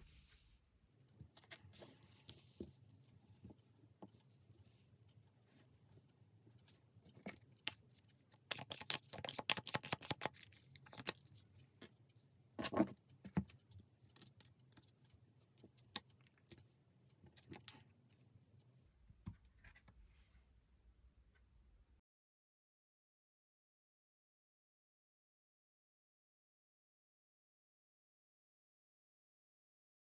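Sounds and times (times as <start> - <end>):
cards being shuffled: 7.7 - 11.2.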